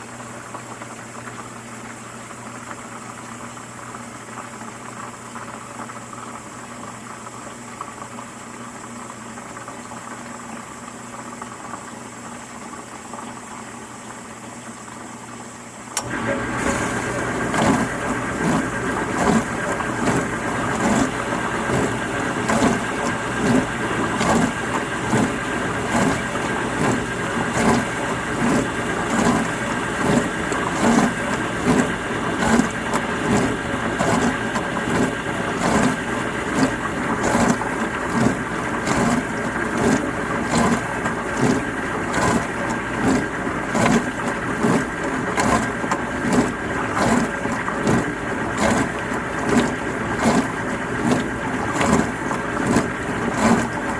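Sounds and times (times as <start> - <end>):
dishwasher motor hum: 0.0 - 53.9
water spraying and swishing: 16.0 - 53.9.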